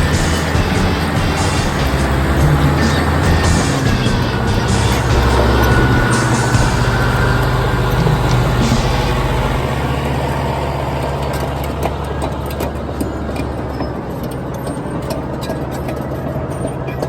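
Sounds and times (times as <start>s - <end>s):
bulldozer diesel engine running: 0.0s - 17.0s
metal clanks and rattles: 0.0s - 17.0s.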